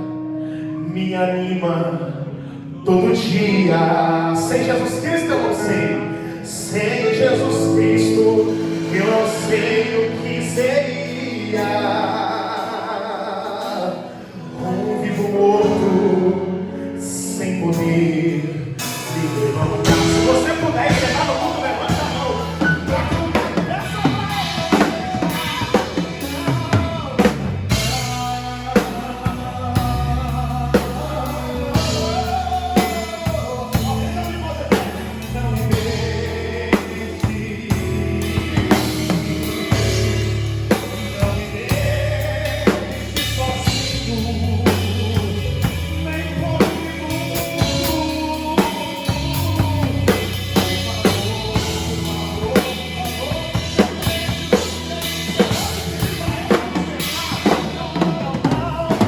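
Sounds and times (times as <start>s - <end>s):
gospel band playing: 0.0s - 59.0s
bass line: 2.7s - 12.7s, 14.8s - 59.0s
drum kit beat: 18.8s - 59.0s
melodic line: 19.2s - 34.8s.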